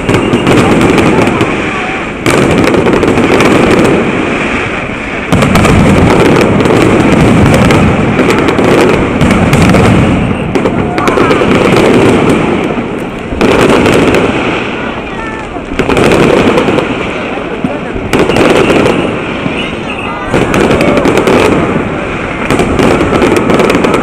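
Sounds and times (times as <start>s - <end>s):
fireworks bangs and crackle: 0.0s - 24.0s.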